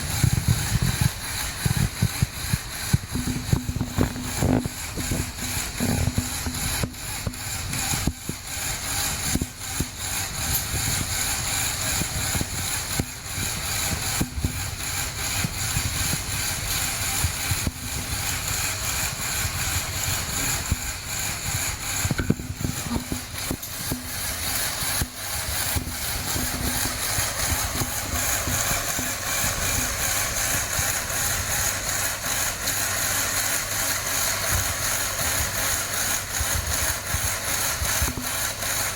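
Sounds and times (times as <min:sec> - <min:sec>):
small electric motor running: 0:00.0 - 0:38.9.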